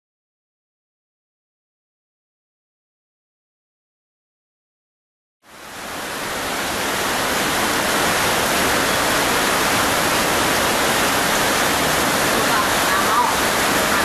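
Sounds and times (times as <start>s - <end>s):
loud rush of water: 5.4s - 14.0s.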